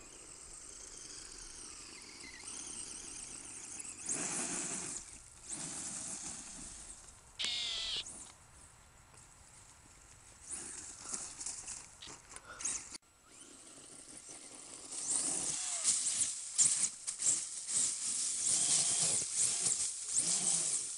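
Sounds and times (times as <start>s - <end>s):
toy car tyres scrabbling on gravel: 13.8s - 20.9s.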